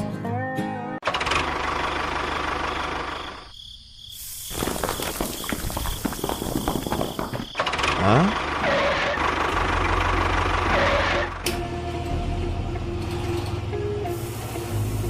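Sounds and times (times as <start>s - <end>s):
music: 0.0s - 1.0s, 11.4s - 15.0s.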